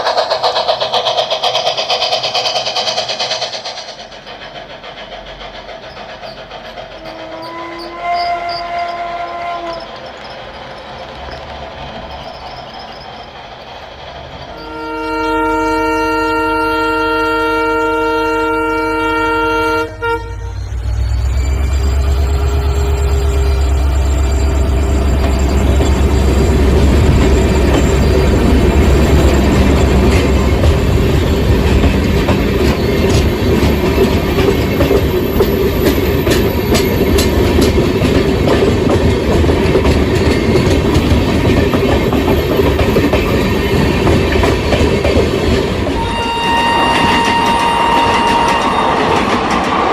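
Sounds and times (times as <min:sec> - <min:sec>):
train rumble and wheel clatter: 0:00.0 - 0:49.9
train horn blast: 0:07.0 - 0:09.9, 0:14.5 - 0:21.0, 0:46.0 - 0:49.3.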